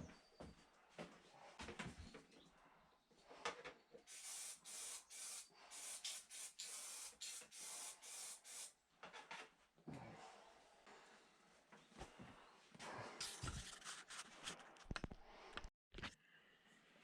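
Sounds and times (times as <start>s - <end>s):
spray paint can hissing: 4.1s - 8.8s.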